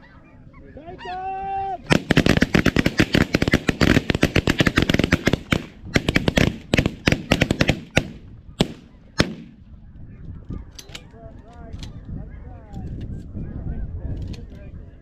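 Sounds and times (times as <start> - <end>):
shotgun fire: 1.9 - 9.6.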